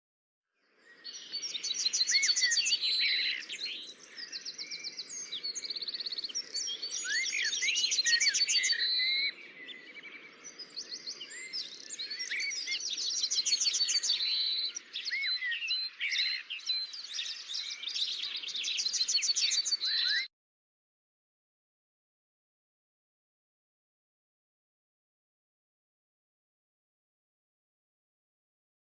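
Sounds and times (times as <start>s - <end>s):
songbirds singing: 0.6s - 20.3s.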